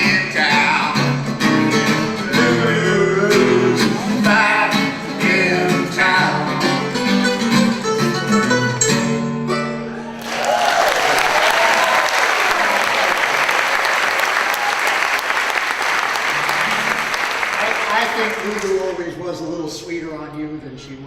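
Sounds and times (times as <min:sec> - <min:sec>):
plucked string song: 0:00.1 - 0:10.0
audience cheering: 0:09.9 - 0:19.0
audience applause: 0:10.1 - 0:19.0.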